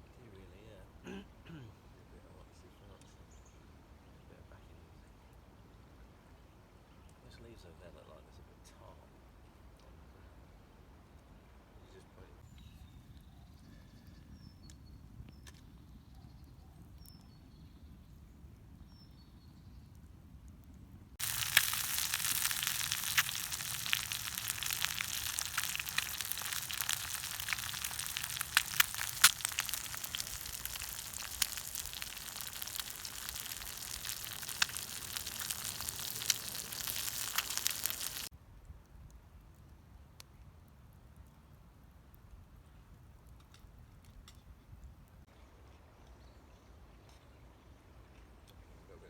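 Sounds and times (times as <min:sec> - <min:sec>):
meat sizzling over fire: 0:21.2 - 0:38.3.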